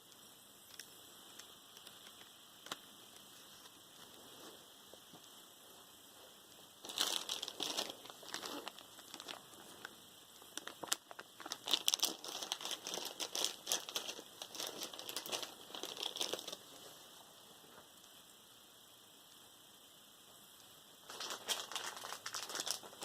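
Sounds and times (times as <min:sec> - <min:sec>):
packaging crinkling: 0:06.8 - 0:16.6, 0:21.0 - 0:23.0.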